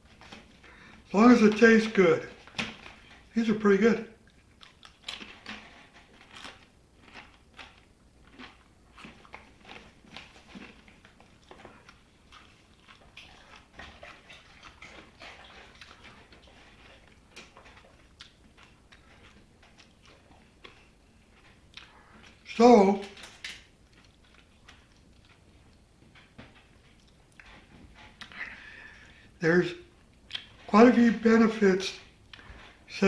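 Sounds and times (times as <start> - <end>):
person chewing crunchy chips: 4.2 - 22.6, 26.9 - 29.4.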